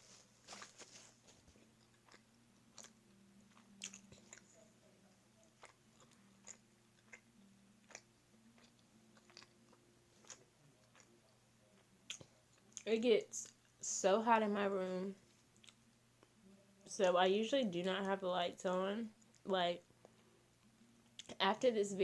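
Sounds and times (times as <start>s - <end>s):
faint low hum: 0.0s - 22.0s
person chewing with wet smacks: 0.5s - 4.7s, 5.4s - 13.8s, 15.5s - 16.4s.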